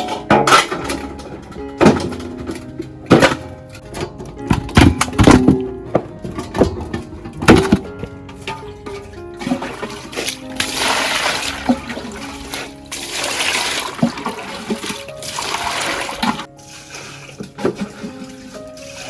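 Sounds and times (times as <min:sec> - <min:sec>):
background music: 0:00.0 - 0:19.0
water pouring and splashing: 0:08.3 - 0:19.0.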